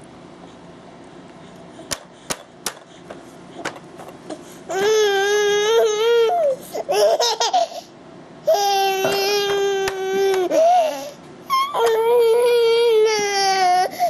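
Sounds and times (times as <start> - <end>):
child squealing: 8.8 - 13.9.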